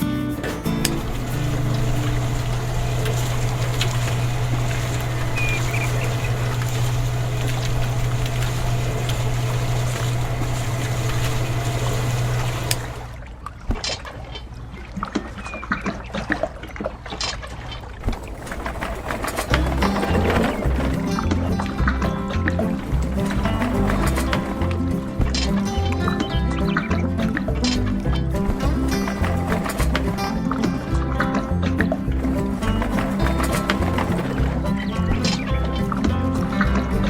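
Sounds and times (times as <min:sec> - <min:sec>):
water trickling and splashing: 0:00.7 - 0:37.0
small clicks and crackles: 0:18.0 - 0:21.3.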